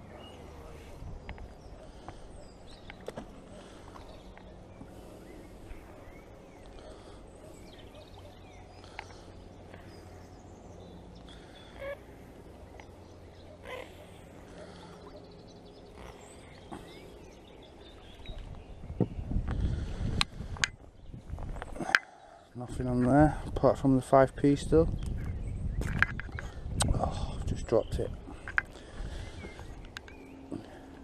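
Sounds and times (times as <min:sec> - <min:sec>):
short bird calls: 0:11.2 - 0:17.2
wind on microphone: 0:18.2 - 0:21.8, 0:24.6 - 0:29.8.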